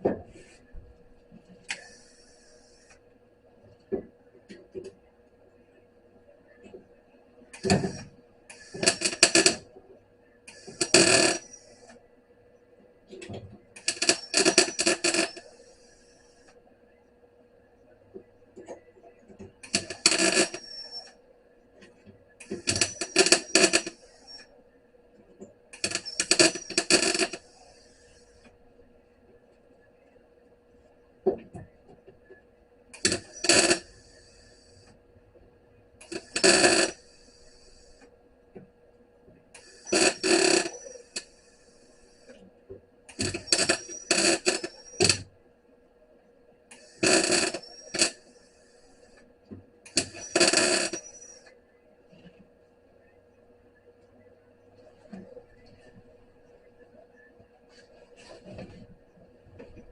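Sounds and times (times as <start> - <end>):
welder crackling bursts: 33.0 - 34.2, 36.0 - 37.4, 39.6 - 40.9, 46.7 - 48.1
welding arc crackling: 33.0 - 34.2, 39.6 - 41.2.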